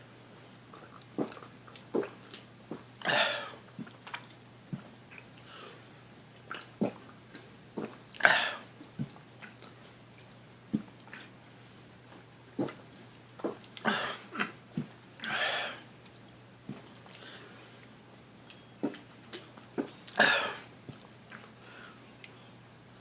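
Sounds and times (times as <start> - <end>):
wet gulping: 0.7 - 4.4, 6.4 - 8.5.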